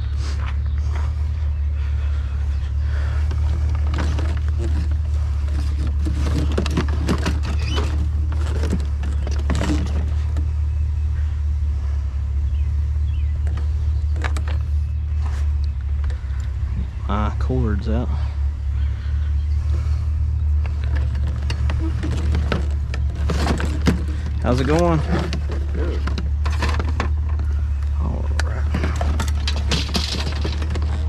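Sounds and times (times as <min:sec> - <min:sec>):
vehicle engine humming: 0:00.0 - 0:31.0
knocks and rattles: 0:03.0 - 0:10.6, 0:20.5 - 0:27.6, 0:28.3 - 0:31.0.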